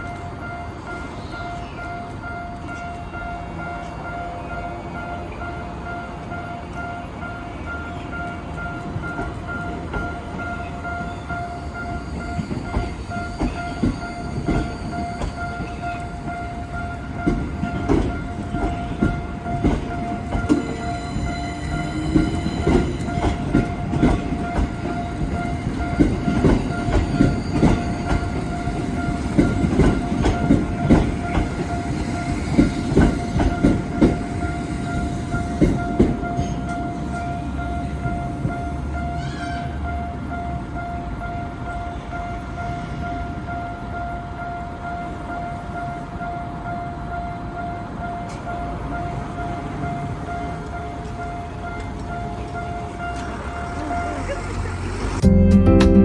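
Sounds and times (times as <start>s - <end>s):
level-crossing alarm ringing: 0.0s - 55.0s
train wheels clacking over rail joints: 11.7s - 37.7s.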